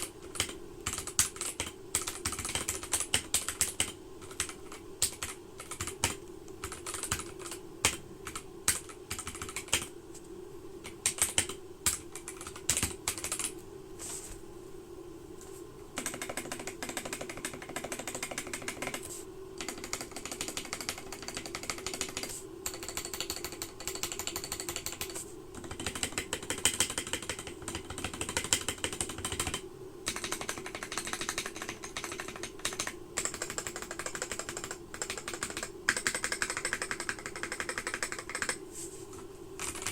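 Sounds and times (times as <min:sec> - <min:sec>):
constant low hum: 0:00.0 - 0:39.9.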